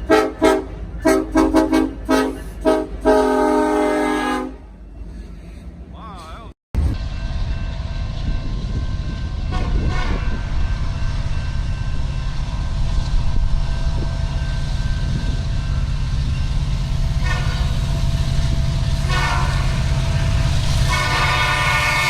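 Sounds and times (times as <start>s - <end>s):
train horn blasts: 0.0s - 4.8s, 9.2s - 10.8s, 17.1s - 22.0s
diesel locomotive rumble: 0.0s - 22.0s.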